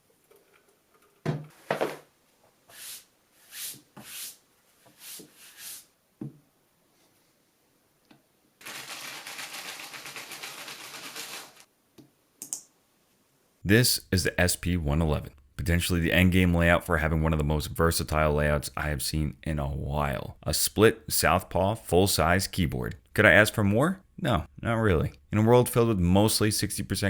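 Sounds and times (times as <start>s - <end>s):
fast typing on keyboard: 8.6s - 11.6s.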